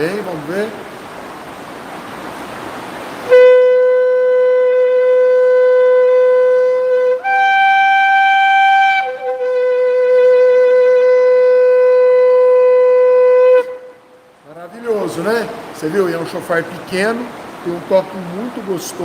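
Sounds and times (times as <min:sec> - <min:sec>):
soft hiss: 0:00.0 - 0:19.0
shofar blast: 0:03.2 - 0:14.2.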